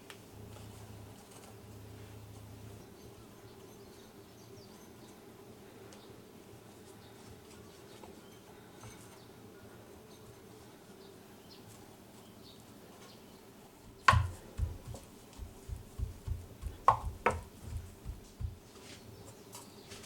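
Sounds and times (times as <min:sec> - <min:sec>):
sharp knock: 0:13.9 - 0:18.6
soft dull thumps: 0:13.9 - 0:18.6.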